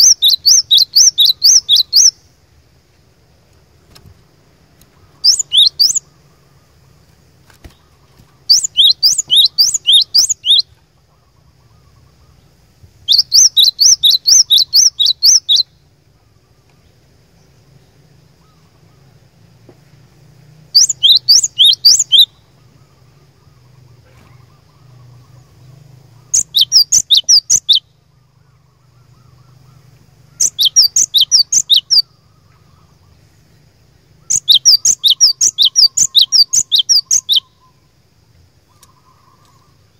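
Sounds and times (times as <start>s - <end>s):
bird singing rapid high notes: 0.0s - 2.2s, 5.0s - 6.2s, 7.7s - 10.7s, 13.0s - 15.8s, 20.7s - 22.4s, 23.5s - 27.9s, 29.0s - 32.7s, 34.2s - 37.8s.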